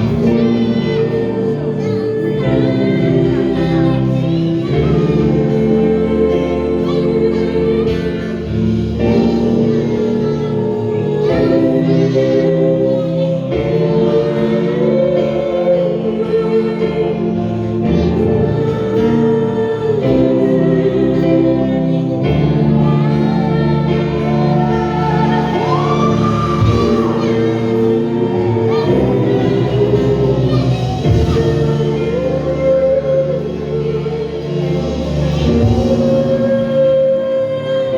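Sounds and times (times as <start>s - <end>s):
group of voices singing: 0.0s - 37.9s
sustained keyboard chords: 0.0s - 37.9s.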